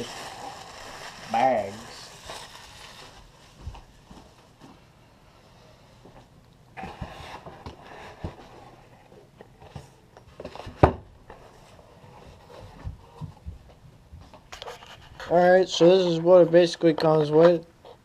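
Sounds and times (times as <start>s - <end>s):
plastic bags rustling: 0.0s - 4.6s.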